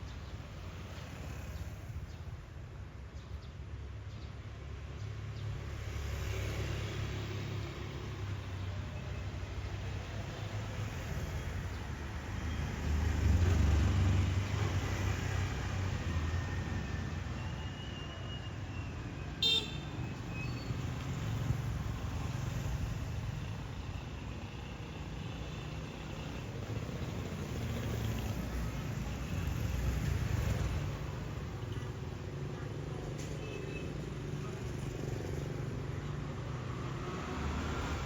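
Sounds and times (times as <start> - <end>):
car horn toot: 19.4 - 19.9.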